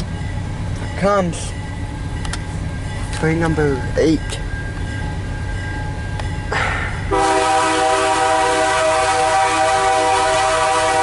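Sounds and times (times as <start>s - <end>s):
low train rumble: 0.0s - 11.0s
locomotive air horn chord: 7.1s - 11.0s.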